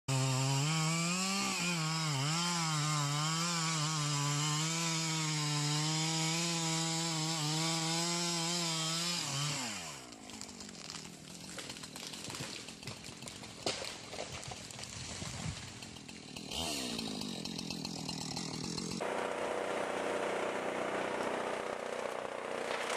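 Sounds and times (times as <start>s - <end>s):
chainsaw cutting at high throttle: 0.1s - 22.9s
crackling: 10.1s - 16.0s.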